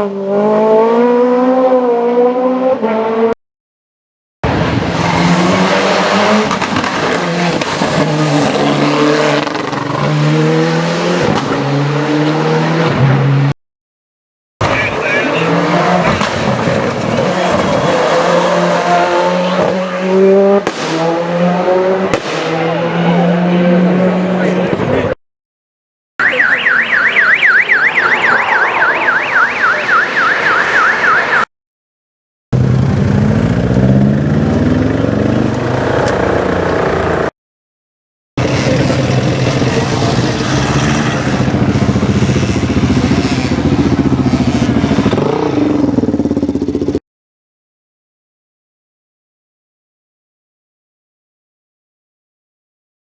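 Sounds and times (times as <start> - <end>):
rally car engine revving: 0.0 - 3.4, 4.4 - 13.5, 14.6 - 25.2, 32.6 - 37.3, 38.4 - 46.1
tyre and road noise: 4.4 - 13.6, 14.6 - 25.2, 32.6 - 37.3, 38.4 - 47.0
electronic siren yelping: 26.2 - 31.5.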